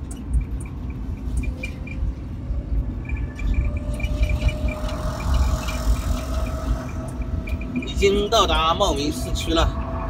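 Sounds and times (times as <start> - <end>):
road and wind noise: 0.0 - 10.0
electric motor whine: 3.2 - 8.3.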